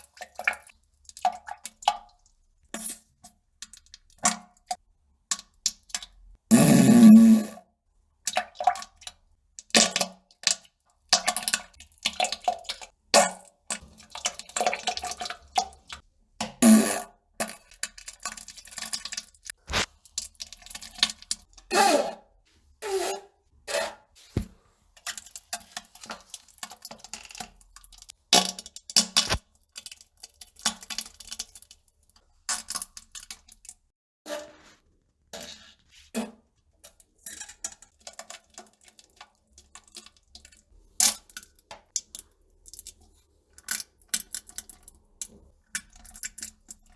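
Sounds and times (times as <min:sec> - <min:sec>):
farting: 0:06.5 - 0:07.6.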